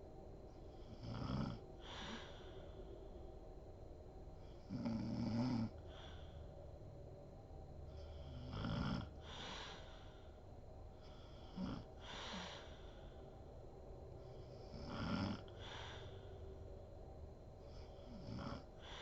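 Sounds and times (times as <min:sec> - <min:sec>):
woman snoring: 0:00.9 - 0:02.5, 0:04.6 - 0:06.0, 0:08.0 - 0:10.2, 0:11.1 - 0:12.8, 0:14.5 - 0:16.3, 0:17.8 - 0:19.0.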